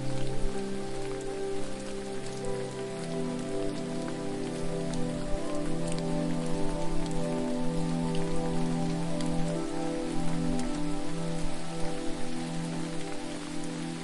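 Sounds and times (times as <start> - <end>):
drip-like ticks: 0.0 - 14.0
falling water hiss: 0.0 - 14.0
soft low musical chords: 0.0 - 14.0.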